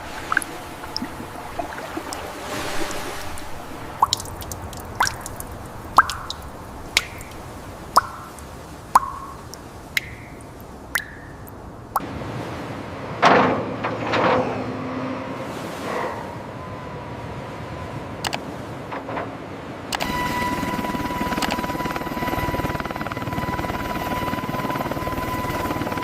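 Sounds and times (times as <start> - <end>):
water dripping: 0.0 - 12.0.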